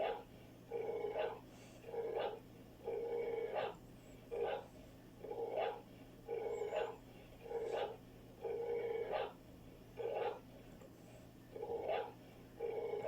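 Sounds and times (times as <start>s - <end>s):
puppy snoring: 5.3s - 9.3s.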